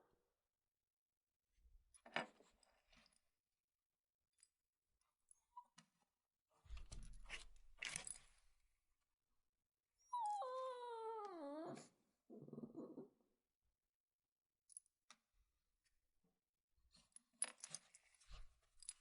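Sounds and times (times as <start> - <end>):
puppy whining cry: 10.0 - 13.0.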